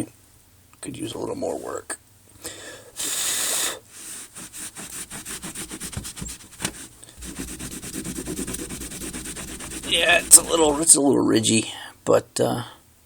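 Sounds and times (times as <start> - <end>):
scratching on copper: 4.0 - 11.0.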